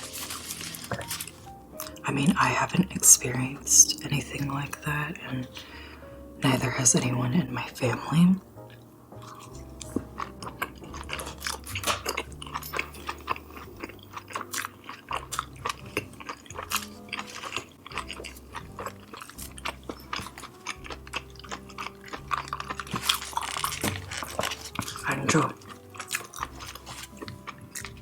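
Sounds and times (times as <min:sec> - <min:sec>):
wet chewing and biting: 0:00.0 - 0:02.0, 0:08.6 - 0:28.0.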